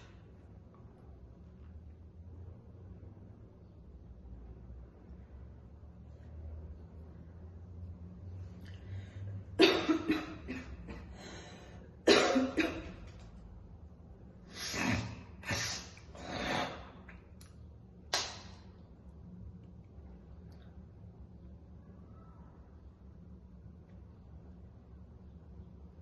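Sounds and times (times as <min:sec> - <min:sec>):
woman coughing: 0:09.6 - 0:11.1, 0:12.0 - 0:13.0.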